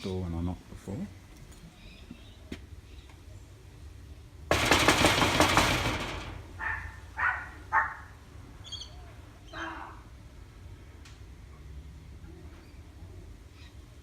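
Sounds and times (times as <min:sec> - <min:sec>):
loud rustle or knock: 0:04.5 - 0:06.6
muffled dog yaps: 0:06.6 - 0:08.1.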